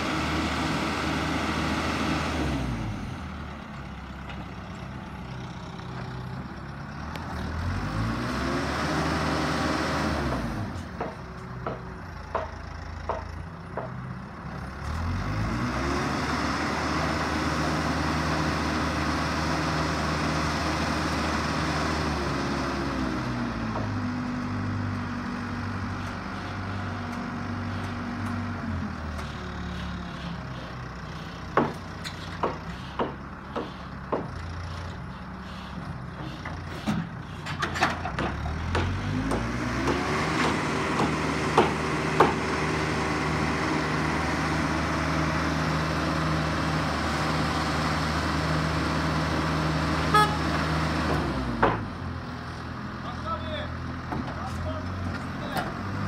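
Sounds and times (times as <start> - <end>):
sharp knocks: 38.0 - 42.4.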